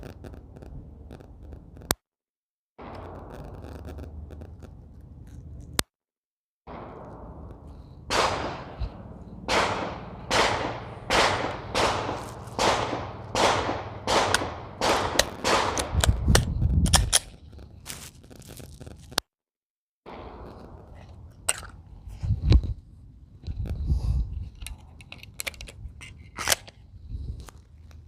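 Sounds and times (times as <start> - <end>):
pistol shots with ringing tail: 6.7 - 16.0.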